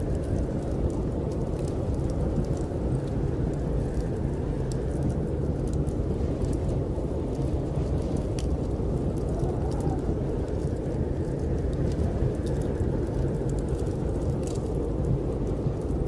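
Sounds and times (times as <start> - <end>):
snowstorm wind rumbling: 0.0 - 16.0
wood fire crackling: 0.0 - 16.0.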